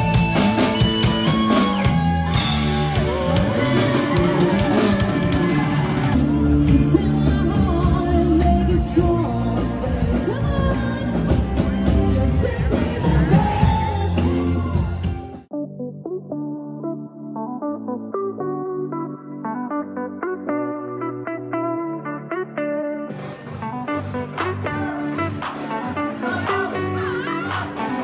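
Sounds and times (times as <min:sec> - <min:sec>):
drum kit: 0:00.0 - 0:15.5, 0:23.1 - 0:28.0
rock music with singing: 0:00.0 - 0:15.5, 0:20.2 - 0:28.0.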